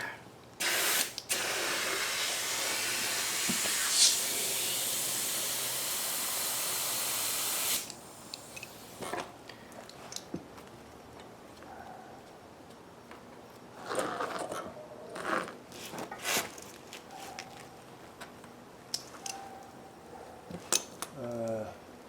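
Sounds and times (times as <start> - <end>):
compressed air hissing into tire: 0.6 - 9.0.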